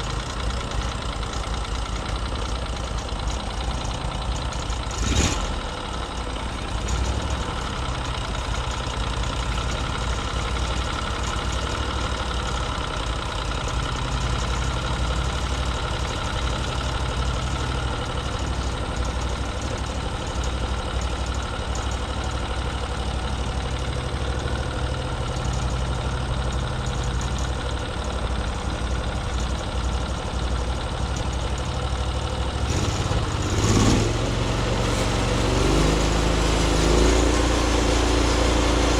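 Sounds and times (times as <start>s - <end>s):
gas engine running: 0.0s - 38.9s
bandsaw mill sawing log: 32.6s - 38.9s.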